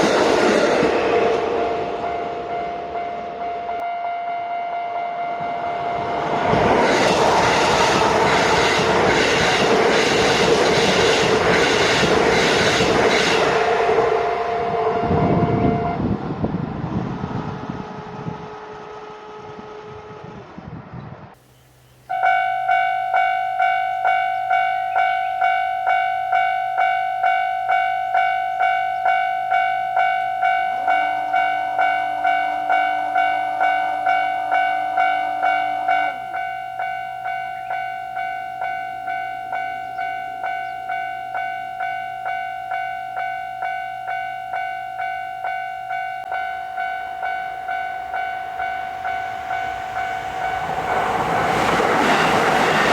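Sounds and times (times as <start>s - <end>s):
train passing: 0.0s - 52.9s
low steady tone: 1.5s - 6.3s
level crossing bell ringing: 22.1s - 50.9s.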